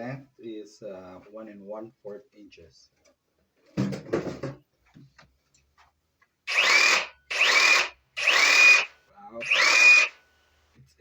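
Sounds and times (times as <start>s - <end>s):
reciprocating saw motor whine: 6.5s - 10.2s.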